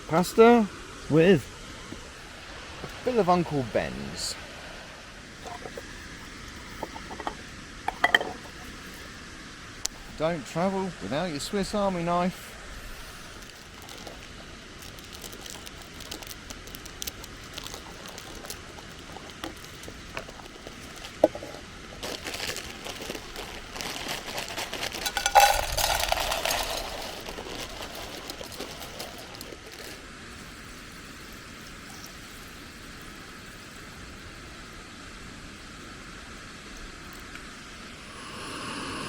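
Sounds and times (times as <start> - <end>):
steady background hiss: 0.0 - 39.0
utensils clicking and knocking: 6.7 - 8.7, 24.9 - 27.4
packaging crinkling: 13.3 - 31.3
liquid pouring: 25.0 - 29.9.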